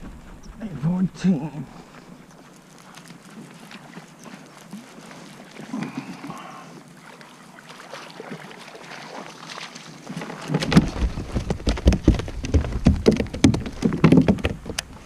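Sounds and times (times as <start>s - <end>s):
wind rumbling on microphone: 0.0s - 2.4s, 10.1s - 15.0s
knocks and bumps: 10.5s - 15.0s.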